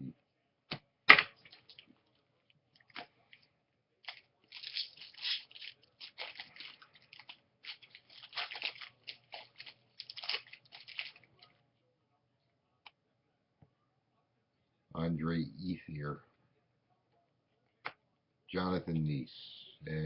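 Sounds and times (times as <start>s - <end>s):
foil wrapper crinkling and tearing: 4.0s - 11.5s.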